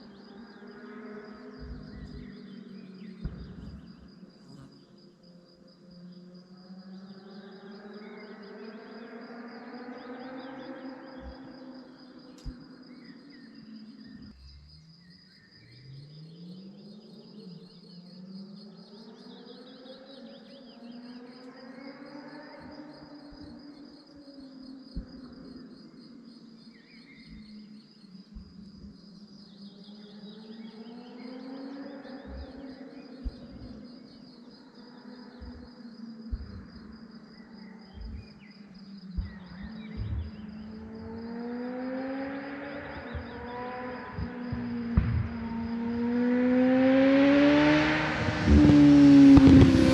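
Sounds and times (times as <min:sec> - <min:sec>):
crickets chirping: 0:00.0 - 0:49.9
motorcycle engine accelerating: 0:01.5 - 0:04.7, 0:32.2 - 0:32.6, 0:33.2 - 0:33.8, 0:36.3 - 0:36.8, 0:39.2 - 0:49.9
short low thumps: 0:01.6 - 0:02.4, 0:03.2 - 0:04.2, 0:35.4 - 0:37.1, 0:37.9 - 0:38.4, 0:39.1 - 0:41.2.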